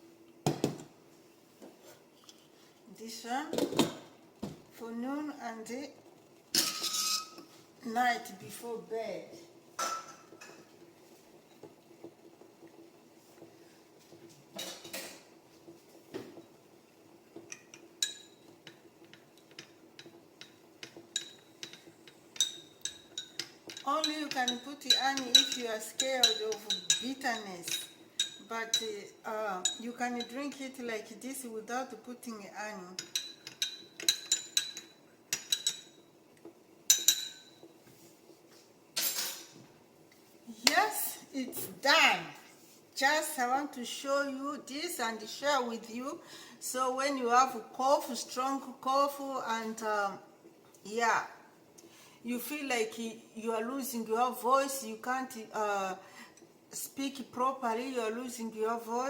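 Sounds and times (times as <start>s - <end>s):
cups and utensils clinking: 6.6s - 7.6s.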